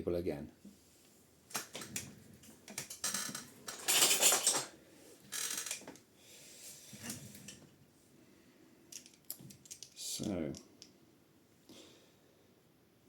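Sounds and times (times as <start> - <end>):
small metal tools clattering: 2.7 - 4.7, 8.9 - 10.6.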